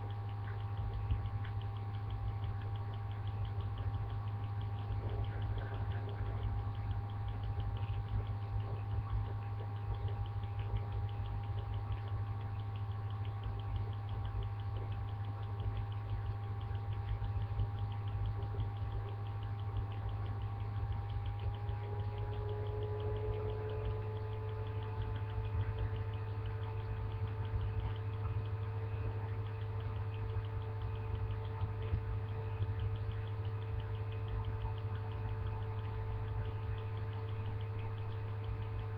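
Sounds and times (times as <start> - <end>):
steady low hum: 0.0 - 38.9.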